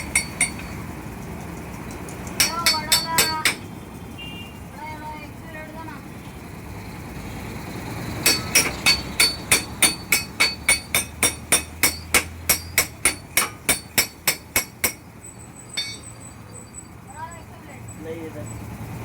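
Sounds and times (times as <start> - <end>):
hammer striking metal: 0.0 - 0.8, 2.3 - 3.7, 8.2 - 15.0, 15.7 - 16.2.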